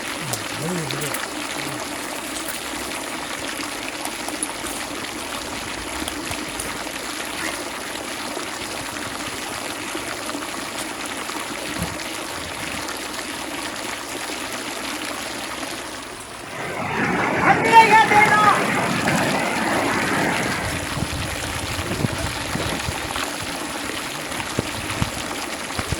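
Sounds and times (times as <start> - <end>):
running water: 0.0 - 25.9.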